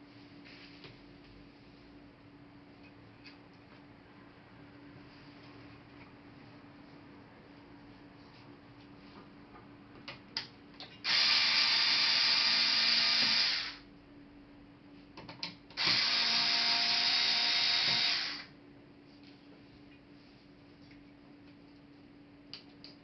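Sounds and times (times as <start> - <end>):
small power tool running: 11.1 - 13.8, 15.8 - 18.5.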